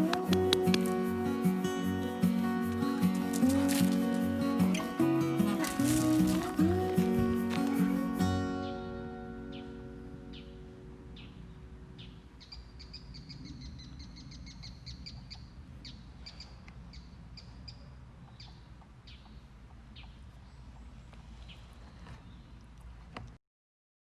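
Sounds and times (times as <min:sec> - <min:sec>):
small birds chirping: 0:00.0 - 0:22.8.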